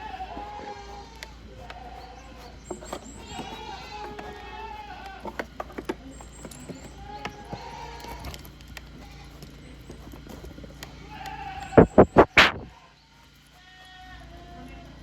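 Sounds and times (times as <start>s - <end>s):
goats bleating: 0.0s - 15.0s
sharp knocks: 11.8s - 12.7s.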